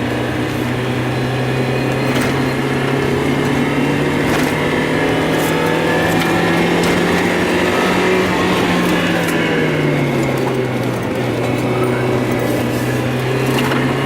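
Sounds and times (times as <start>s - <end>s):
car engine misfiring: 0.0s - 14.0s.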